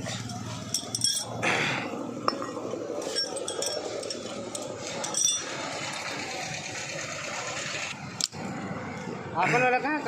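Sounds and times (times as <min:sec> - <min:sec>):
metallic clinks of tools: 0:00.1 - 0:01.4, 0:03.0 - 0:05.7.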